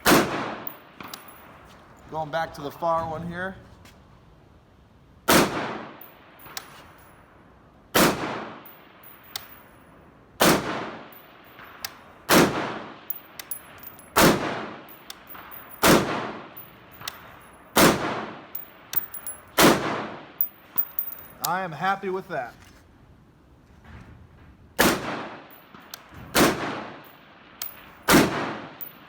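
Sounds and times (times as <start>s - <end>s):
rifle shots echoing: 0.0s - 1.5s, 5.3s - 6.6s, 8.0s - 9.4s, 10.4s - 21.4s, 24.8s - 29.0s.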